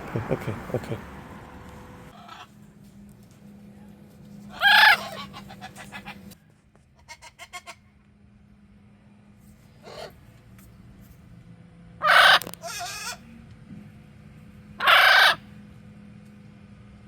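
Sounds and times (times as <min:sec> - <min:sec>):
parrot squawking: 0:02.2 - 0:02.5, 0:04.5 - 0:06.4, 0:09.8 - 0:10.2, 0:12.0 - 0:13.2, 0:14.8 - 0:15.4.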